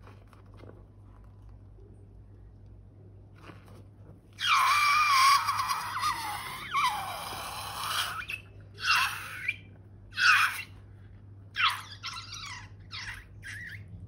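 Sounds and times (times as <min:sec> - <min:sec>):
air squealing from balloon neck: 0:04.4 - 0:10.8, 0:11.6 - 0:13.9.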